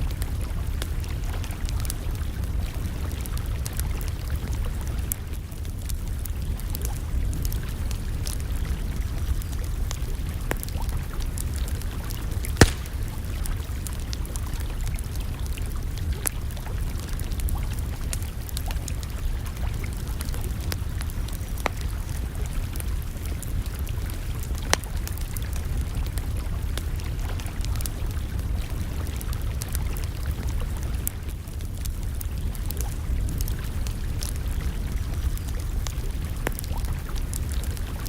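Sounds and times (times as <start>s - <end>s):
campfire crackling: 0.0s - 38.0s
sharp pops of fire: 12.5s - 13.4s.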